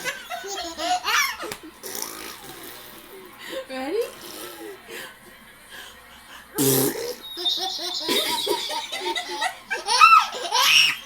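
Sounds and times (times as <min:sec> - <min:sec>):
child laughing: 0:07.4 - 0:11.0.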